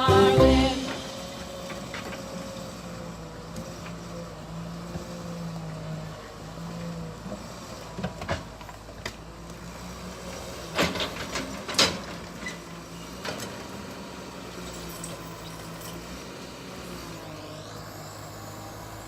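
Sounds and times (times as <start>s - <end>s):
diesel engine running: 0.0s - 5.2s.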